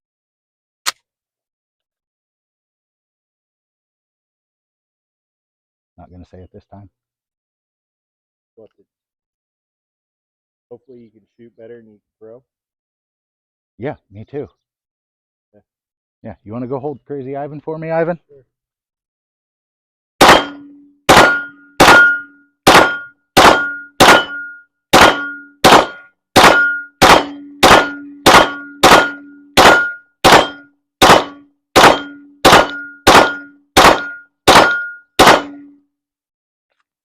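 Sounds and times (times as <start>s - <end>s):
pistol shots: 20.2s - 35.7s
steel target ringing clang: 20.2s - 35.8s.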